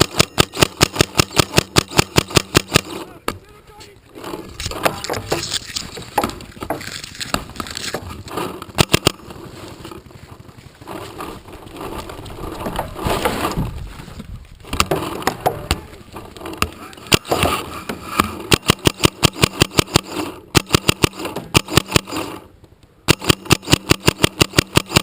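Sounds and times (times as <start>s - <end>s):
paintball markers firing: 0.0s - 3.4s, 4.2s - 9.4s, 18.2s - 25.0s
shuffling noise: 2.9s - 15.2s.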